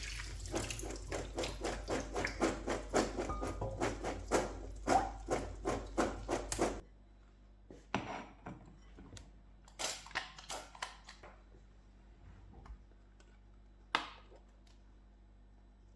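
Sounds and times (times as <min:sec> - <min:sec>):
knife chopping on wooden board: 0:00.6 - 0:06.8.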